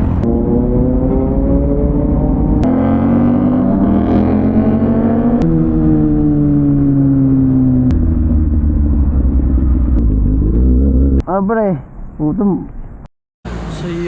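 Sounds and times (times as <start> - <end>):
motorcycle engine revving: 0.0 - 11.2.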